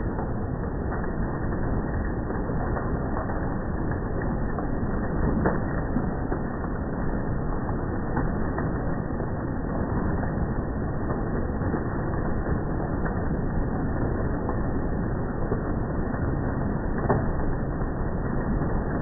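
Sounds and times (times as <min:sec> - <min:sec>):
hail and rain pelting down: 0:00.0 - 0:19.0.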